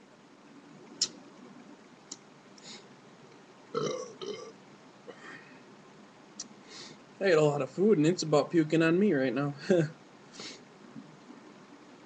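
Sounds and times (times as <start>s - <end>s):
mouth clicks: 0.9s - 1.2s
man burping: 3.8s - 4.6s.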